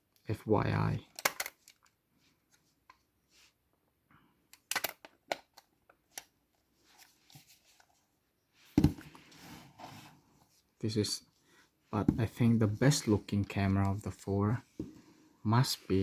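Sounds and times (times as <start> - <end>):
clicks of cameras being handled: 1.1 - 2.0, 4.5 - 6.4.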